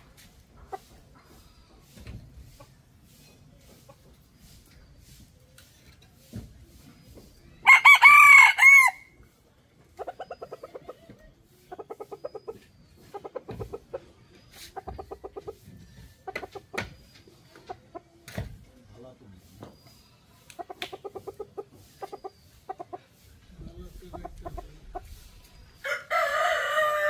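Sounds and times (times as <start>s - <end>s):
chickens clucking rapidly: 0.0s - 5.4s, 9.7s - 18.3s, 20.4s - 27.0s
rooster crowing: 7.6s - 9.1s, 25.8s - 27.0s.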